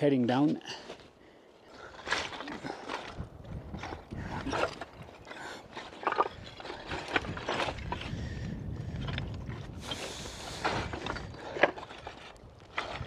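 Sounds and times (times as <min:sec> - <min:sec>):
footsteps on loose rock: 0:01.8 - 0:13.0
wind rumble on microphone: 0:02.9 - 0:13.0.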